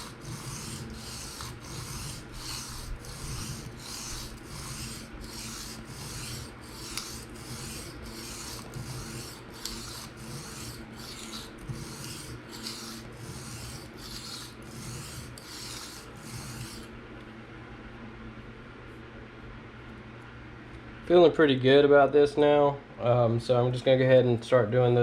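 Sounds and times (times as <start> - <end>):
knife scraping on sharpening stone: 0.0 - 16.9.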